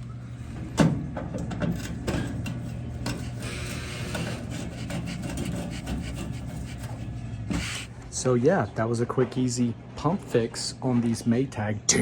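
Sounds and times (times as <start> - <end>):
steady low hum: 0.0 - 12.0
rubbing and handling noises: 2.6 - 8.1.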